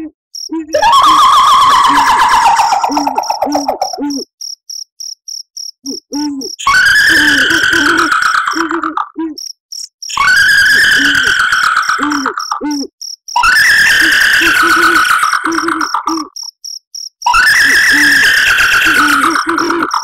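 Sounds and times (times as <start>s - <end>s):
low owl hoot: 0.0s - 4.2s, 5.9s - 9.4s, 10.7s - 12.9s, 13.9s - 16.3s, 18.7s - 20.0s
crickets chirping: 0.3s - 20.0s
high-pitched female cackle: 0.6s - 4.2s, 13.4s - 16.4s, 17.3s - 20.0s.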